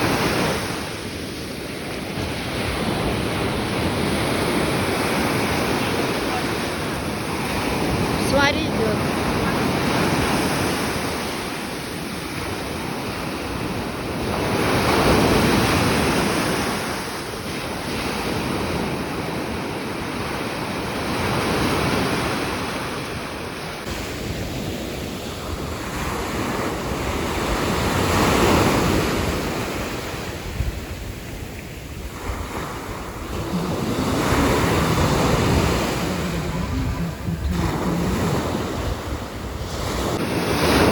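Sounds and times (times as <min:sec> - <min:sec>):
sea waves washing onto shore: 0:00.0 - 0:40.9
wind buffeting microphone: 0:23.8 - 0:40.9.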